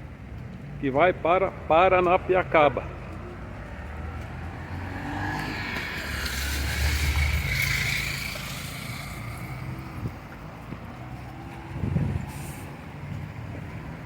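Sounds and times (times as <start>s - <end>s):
heavy vehicle engine rumble: 5.7s - 14.0s.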